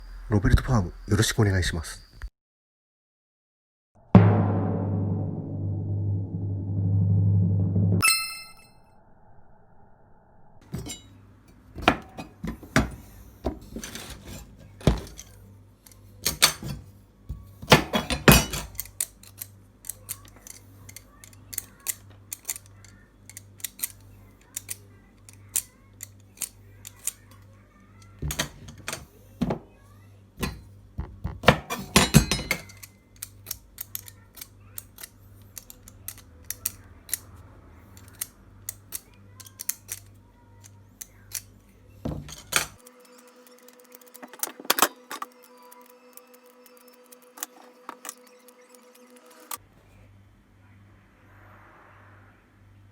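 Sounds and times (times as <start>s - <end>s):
kitchen utensils clicking and knocking: 10.6s - 15.4s, 16.2s - 16.9s, 17.6s - 22.7s, 28.0s - 29.7s, 30.4s - 35.0s, 41.0s - 42.8s
quiet background music: 10.8s - 50.9s.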